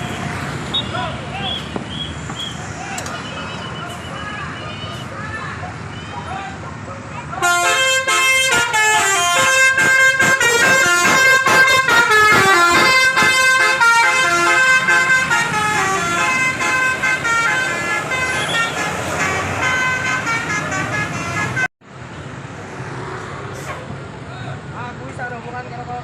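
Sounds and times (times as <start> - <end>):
bus horn playing fast melody: 7.4 - 21.7.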